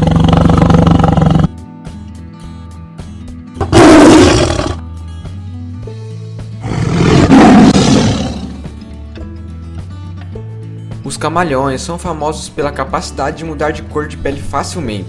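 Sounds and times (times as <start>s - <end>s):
tiger roaring: 0.0s - 1.5s, 3.6s - 4.8s, 6.6s - 8.7s
soft background music: 0.0s - 15.0s.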